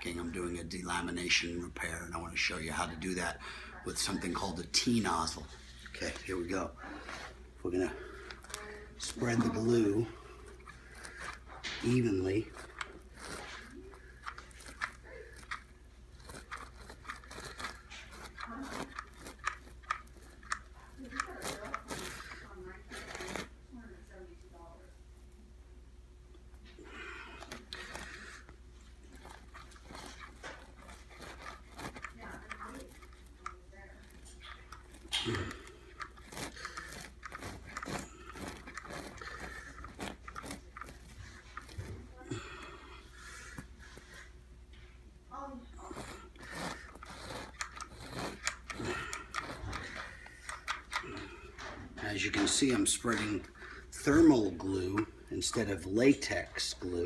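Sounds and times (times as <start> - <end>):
steady low hum: 0.0 - 57.0
glue nozzle clicks and crunches: 8.2 - 23.5, 27.4 - 42.1, 45.9 - 51.8.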